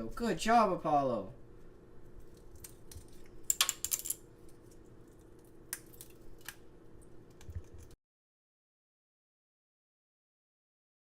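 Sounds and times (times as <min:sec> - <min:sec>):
parrot cracking nut shell: 0:02.3 - 0:06.7.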